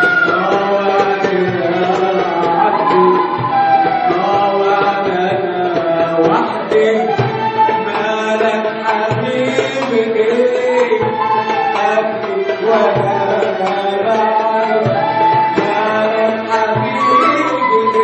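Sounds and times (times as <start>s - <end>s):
percussion strokes: 0.0s - 18.0s
gliding instrumental melody: 2.4s - 4.4s.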